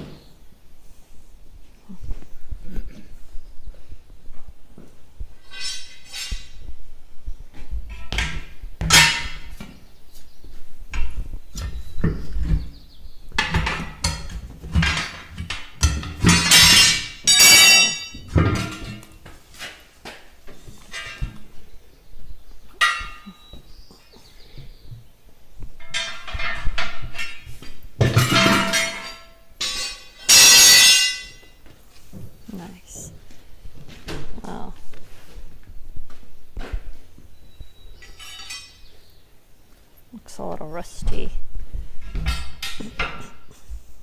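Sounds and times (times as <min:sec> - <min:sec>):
metal tools striking wheel rim: 0:08.0 - 0:09.7, 0:13.4 - 0:19.2, 0:22.8 - 0:23.4, 0:28.0 - 0:31.4, 0:38.0 - 0:38.9.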